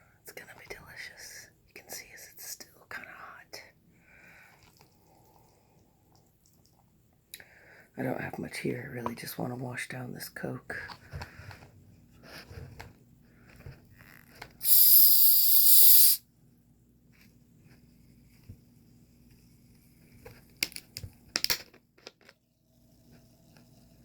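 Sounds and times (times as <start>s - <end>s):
soda can hiss: 14.6s - 16.2s.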